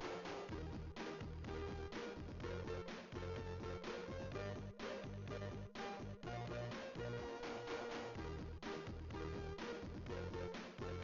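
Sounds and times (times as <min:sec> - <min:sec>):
steady bass beat: 0:00.0 - 0:07.2.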